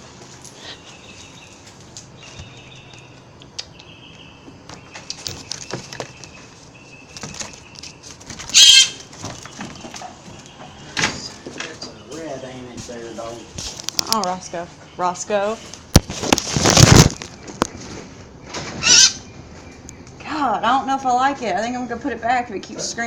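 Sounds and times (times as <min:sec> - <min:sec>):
young blue jay calling: 0:00.6 - 0:11.0, 0:17.2 - 0:20.9
harsh bird scream: 0:08.3 - 0:09.1, 0:18.6 - 0:19.3.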